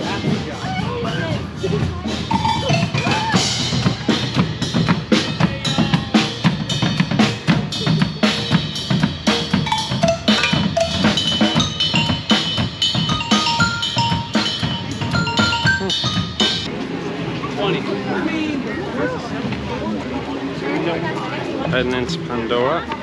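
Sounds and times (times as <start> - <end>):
percussion troupe drumming: 0.0 - 16.7.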